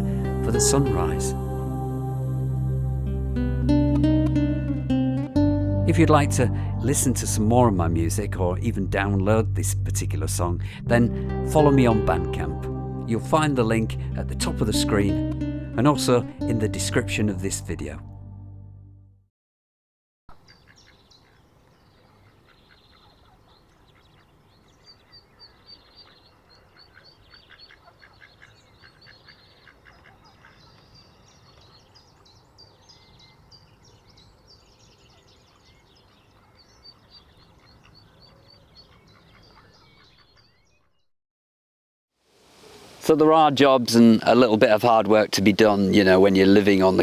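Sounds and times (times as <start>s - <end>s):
birds calling: 20.4s - 41.1s
small bird chirping: 20.4s - 41.1s
ducks quacking: 26.1s - 30.7s.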